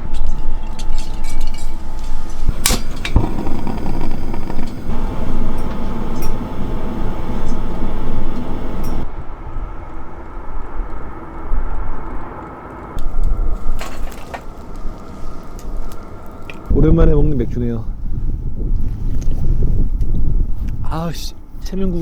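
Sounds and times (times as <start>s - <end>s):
gusty wind buffeting microphone: 0.0s - 22.0s.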